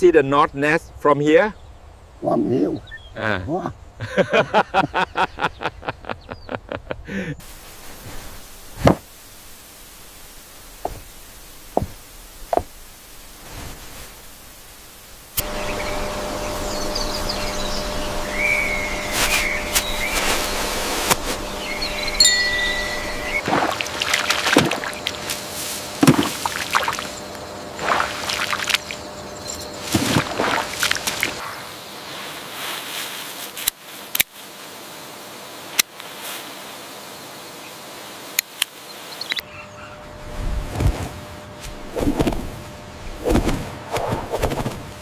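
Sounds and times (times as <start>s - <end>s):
steady hiss: 3.6s - 39.4s
water splashing and sloshing: 23.4s - 31.8s.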